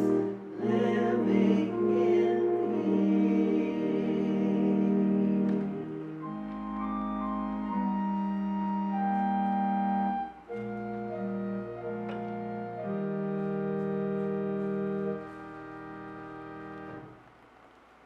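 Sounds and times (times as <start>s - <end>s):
voices singing: 0.0s - 8.0s
church organ playing chords: 0.0s - 17.2s.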